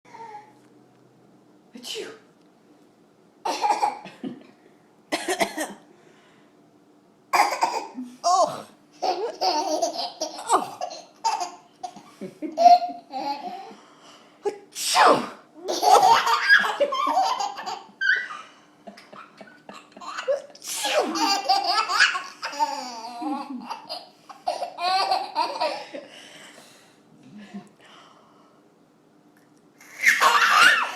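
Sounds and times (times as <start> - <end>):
toddler laughing: 9.0 - 13.8, 15.6 - 25.9, 30.0 - 30.9.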